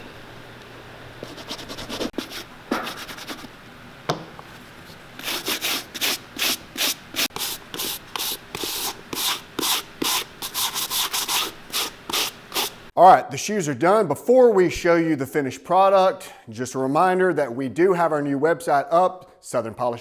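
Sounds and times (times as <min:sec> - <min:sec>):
hand rubbing leather shoe: 0:05.2 - 0:12.8.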